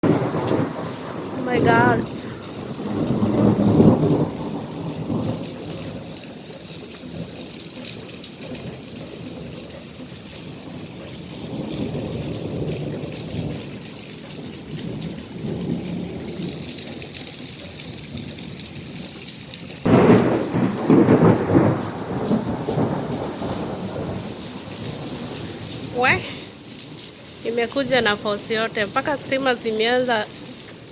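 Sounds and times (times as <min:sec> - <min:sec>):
rolling thunder: 0:00.0 - 0:06.5, 0:11.2 - 0:17.2, 0:19.8 - 0:27.2
heavy rain falling: 0:00.0 - 0:30.9.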